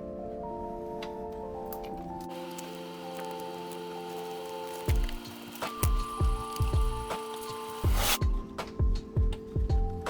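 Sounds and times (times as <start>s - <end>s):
slow melody of held notes: 0.0s - 10.0s
sharp clicks: 1.7s - 8.2s.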